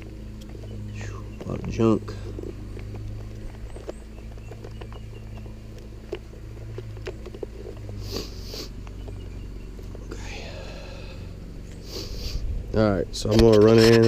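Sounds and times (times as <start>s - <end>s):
steady low hum: 0.0s - 14.0s
person sniffing: 8.0s - 8.8s, 10.1s - 12.5s.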